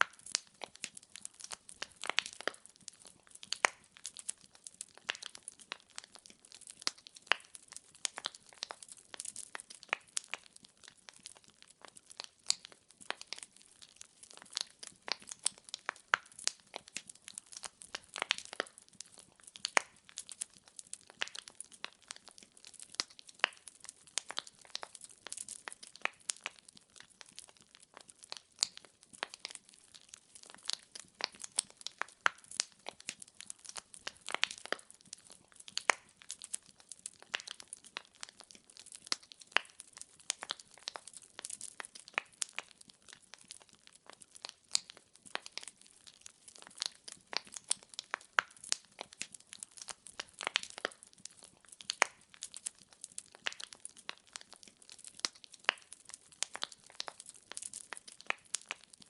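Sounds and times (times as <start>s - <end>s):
wood fire crackling and popping: 0.0s - 59.0s.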